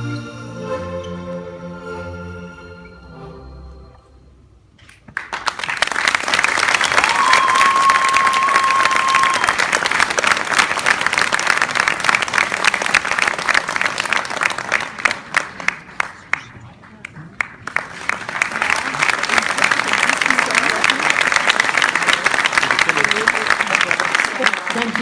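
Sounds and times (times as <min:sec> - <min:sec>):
music: 0:00.0 - 0:04.6
audience applause: 0:05.1 - 0:25.0
crowd whistle: 0:07.0 - 0:09.6.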